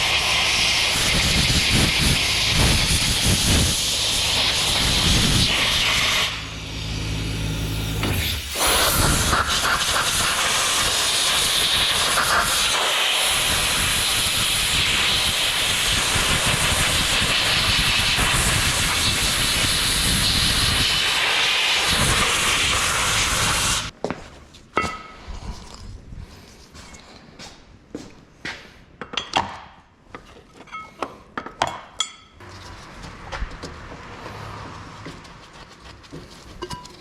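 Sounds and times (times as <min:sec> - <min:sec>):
aerosol spray hissing: 0:08.4 - 0:23.9.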